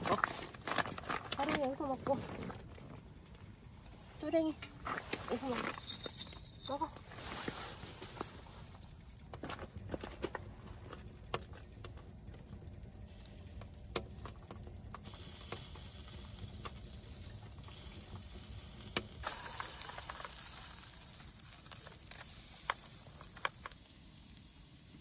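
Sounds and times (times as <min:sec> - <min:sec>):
food sizzling in a pan: 0:15.0 - 0:25.0.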